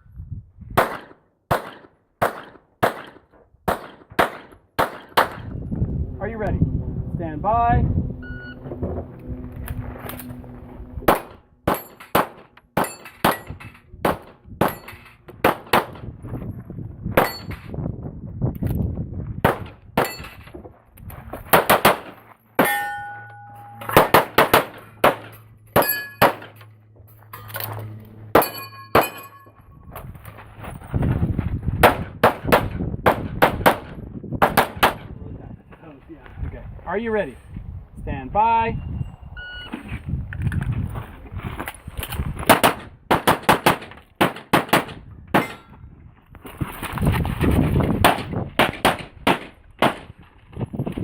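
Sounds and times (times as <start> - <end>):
pistol shots: 0.8 - 5.5, 11.1 - 16.0, 21.5 - 22.1, 23.9 - 26.5, 42.5 - 45.6, 48.0 - 50.1
steel targets clanging: 11.1 - 13.9, 14.6 - 15.2, 20.0 - 20.5, 22.6 - 26.7, 27.3 - 29.6, 45.4 - 45.8.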